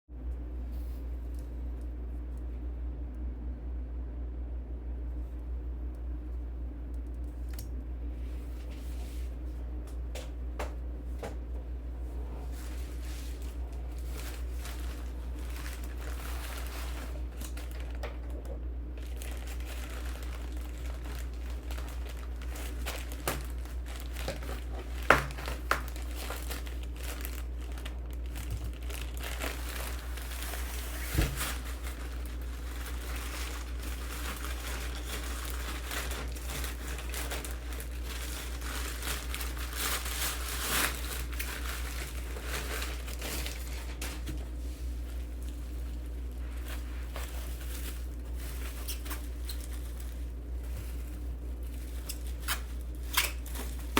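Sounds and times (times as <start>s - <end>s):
wrapping crinkling: 12.4s - 53.9s.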